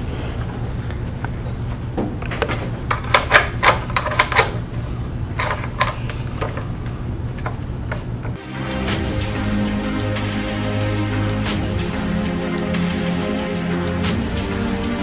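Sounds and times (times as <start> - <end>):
steady low hum: 0.0 - 15.0
sharp clicks and clacks: 2.2 - 4.6.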